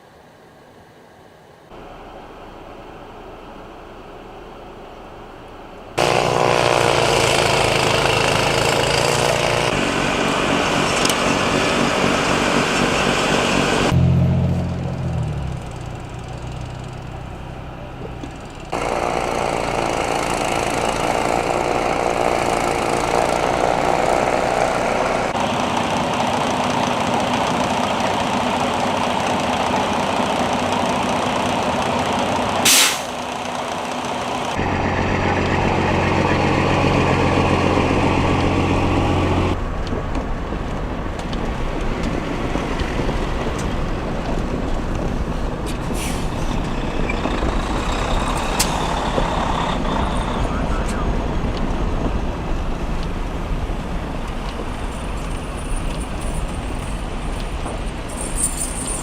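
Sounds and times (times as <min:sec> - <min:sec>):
heavy vehicle engines running: 0:01.7 - 0:59.0
loud hiss: 0:32.7 - 0:33.2.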